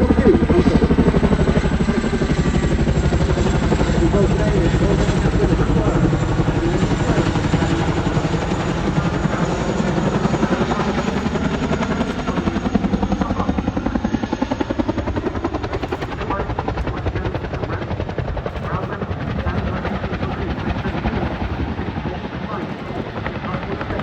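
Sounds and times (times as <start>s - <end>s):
helicopter rotor blades chopping: 0.0s - 24.0s.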